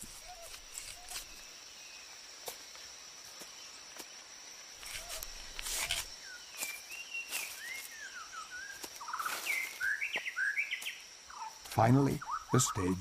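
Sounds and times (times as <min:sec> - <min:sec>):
high insect tone: 0:00.0 - 0:13.0
birds whistling and chirping: 0:06.3 - 0:13.0.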